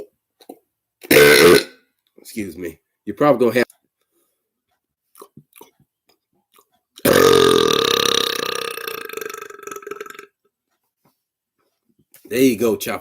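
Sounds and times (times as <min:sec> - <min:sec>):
man burping: 0:01.0 - 0:01.8, 0:07.0 - 0:10.3.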